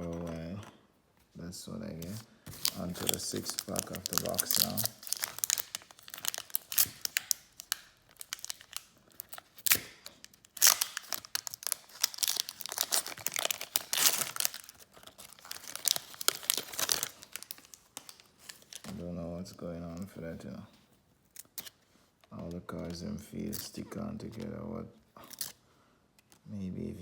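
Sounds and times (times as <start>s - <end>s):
foil wrapper tearing and crinkling: 2.5s - 18.9s.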